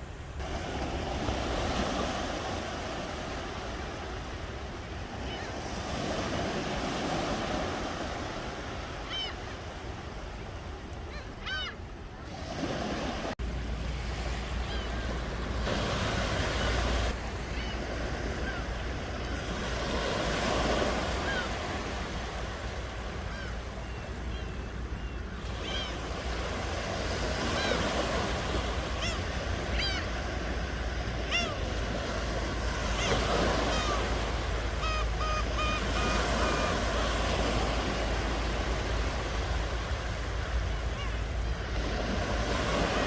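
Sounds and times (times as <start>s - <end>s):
ocean waves washing onto shore: 0.0s - 11.2s, 11.9s - 43.0s
bird calls: 8.8s - 9.6s, 14.2s - 43.0s.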